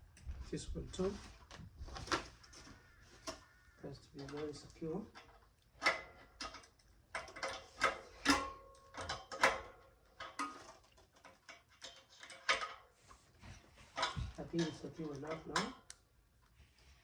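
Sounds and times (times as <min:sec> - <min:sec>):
wrench clinking on a bolt: 0:04.1 - 0:12.9, 0:14.0 - 0:16.0.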